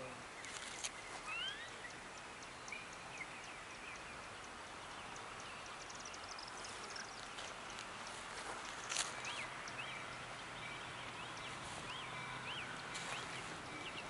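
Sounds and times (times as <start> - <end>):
bird chirps: 0.0 - 14.0
faint outdoor hiss: 0.0 - 14.0
high ticks: 1.9 - 4.6.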